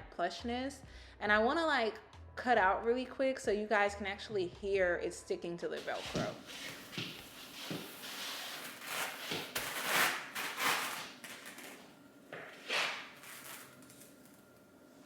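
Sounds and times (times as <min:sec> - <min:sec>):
hook-and-loop fastener ripping: 0:08.3 - 0:11.8.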